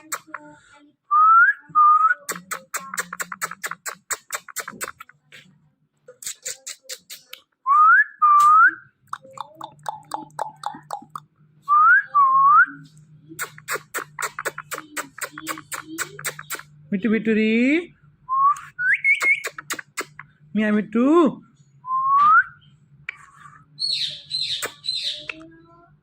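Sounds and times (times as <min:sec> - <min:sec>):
parrot clicking and chattering: 0:00.0 - 0:00.6, 0:02.2 - 0:05.2, 0:06.1 - 0:07.5, 0:09.0 - 0:11.3, 0:13.4 - 0:16.7, 0:19.1 - 0:20.4, 0:24.0 - 0:25.4
parrot upswept whistles: 0:18.8 - 0:19.6.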